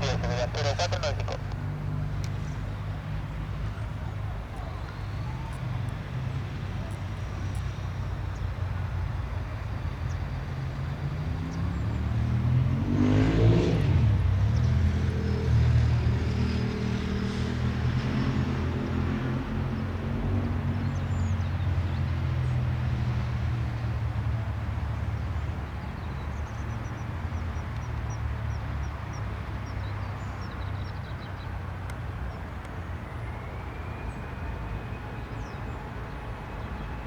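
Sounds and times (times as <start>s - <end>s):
jet engines at takeoff thrust: 30.3s - 37.0s.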